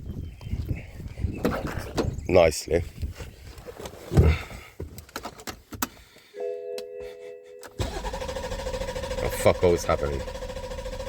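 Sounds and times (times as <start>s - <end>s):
chime-like tone: 6.4s - 7.8s
starter motor cranking engine: 7.8s - 11.0s.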